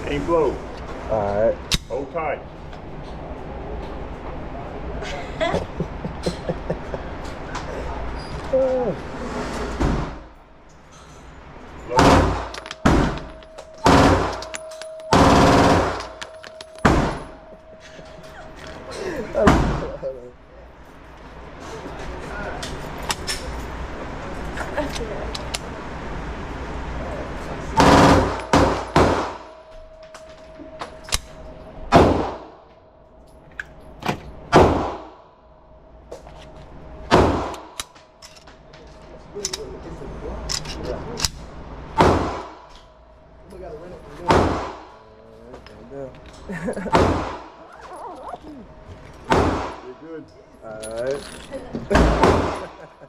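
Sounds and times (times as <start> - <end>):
loud gunshots: 12.0 - 13.2, 13.8 - 14.4, 15.1 - 16.0, 27.8 - 29.4, 34.5 - 35.1, 37.1 - 37.7, 42.0 - 42.6, 44.3 - 44.9, 46.9 - 47.5, 49.3 - 49.8, 52.0 - 52.7
gunshots with ringing echo: 12.0 - 18.1, 27.8 - 29.6.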